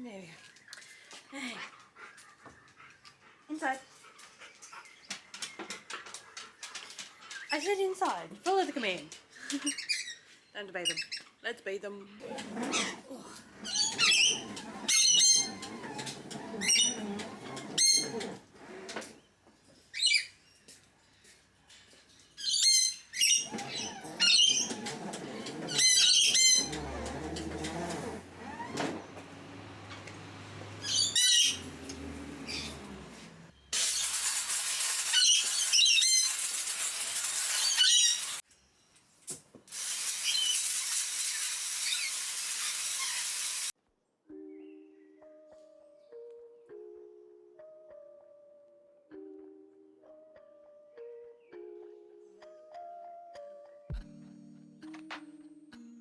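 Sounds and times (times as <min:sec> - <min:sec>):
birds squawking and chirping: 0:12.2 - 0:18.2, 0:22.4 - 0:27.6, 0:30.6 - 0:33.4
hose spray hissing: 0:33.8 - 0:38.4, 0:39.7 - 0:43.7.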